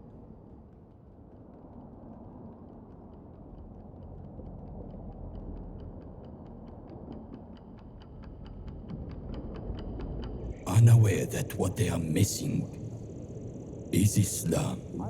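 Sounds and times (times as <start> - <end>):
low continuous rumble: 10.3 - 15.0.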